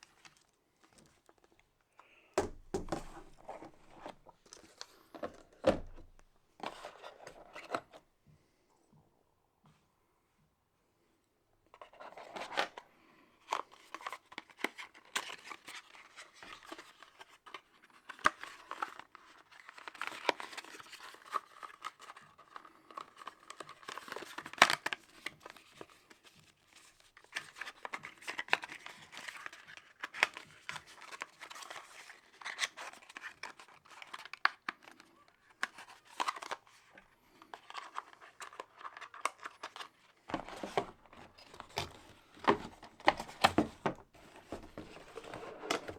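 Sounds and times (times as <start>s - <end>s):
packaging clicks and knocks: 2.4s - 4.6s, 38.8s - 45.9s
paper and plastic rustling: 2.4s - 8.0s, 13.5s - 45.9s.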